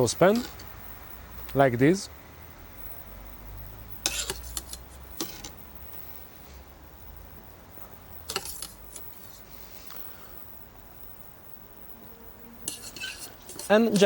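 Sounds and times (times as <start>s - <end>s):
tongs clinking against pans: 4.0s - 5.5s, 12.6s - 14.0s.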